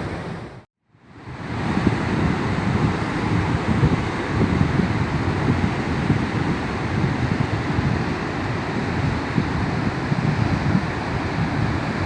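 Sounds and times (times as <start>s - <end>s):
surf churning against shore: 0.0s - 12.0s
wind buffeting microphone: 1.1s - 12.0s.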